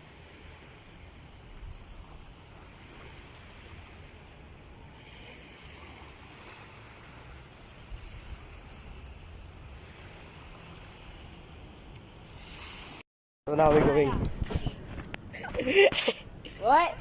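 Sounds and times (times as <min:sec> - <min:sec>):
sea water washing: 0:00.0 - 0:13.0
wind rumbling on microphone: 0:00.0 - 0:17.0.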